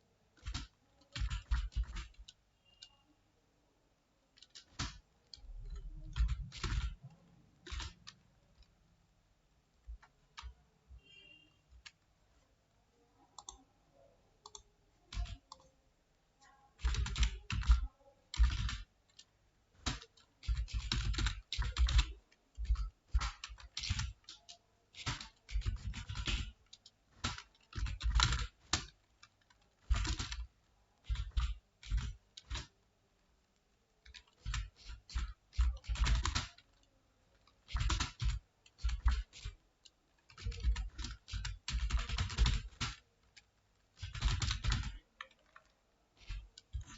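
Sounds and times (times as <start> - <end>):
rapid keyboard typing: 0.3 - 3.0, 4.3 - 8.8, 9.8 - 10.6, 13.3 - 13.7, 14.4 - 15.8, 16.7 - 46.9.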